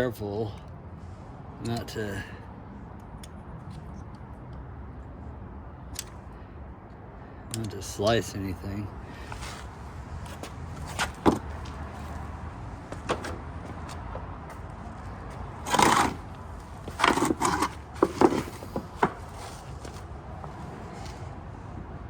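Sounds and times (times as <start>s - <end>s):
tool knocks and clicks: 10.4s - 11.8s, 15.6s - 16.3s, 16.9s - 19.4s
screwdriver rubbing on rubber: 15.6s - 19.0s.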